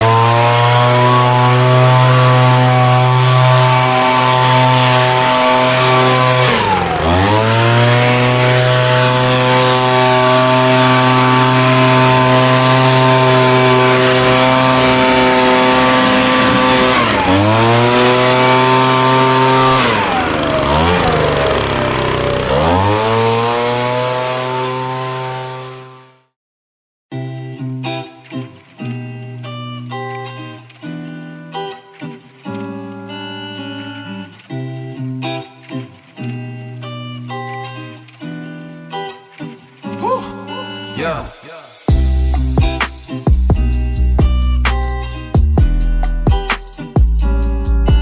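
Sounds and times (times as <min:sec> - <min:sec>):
pressure washer engine: 0:00.0 - 0:26.2
high-pressure water spray hiss: 0:41.2 - 0:41.9.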